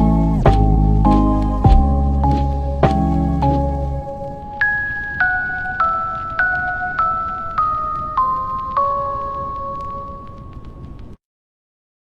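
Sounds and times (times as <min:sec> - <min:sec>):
deep falling bass hits: 0:00.0 - 0:04.2
held melody bending in pitch: 0:00.0 - 0:10.7.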